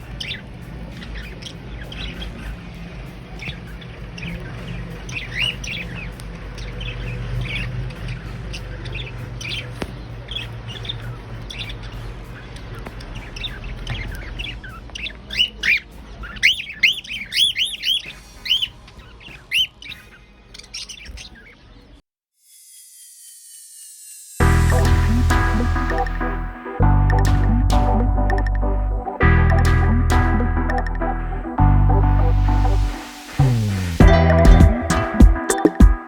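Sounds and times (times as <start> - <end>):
cockatiels chirping and squawking: 0.1 - 2.8, 3.4 - 21.9.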